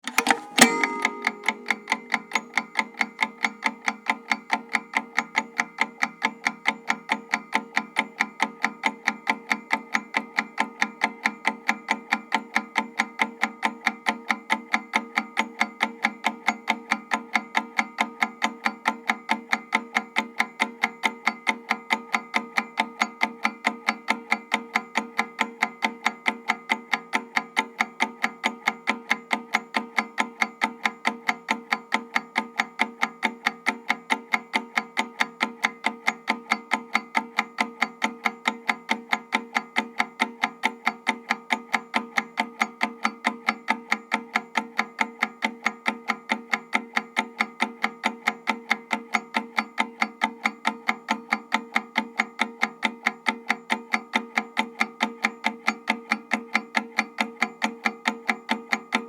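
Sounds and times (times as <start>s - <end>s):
clockwork timer ticking: 0.0s - 2.9s
faint steady ringing tone: 0.1s - 2.6s.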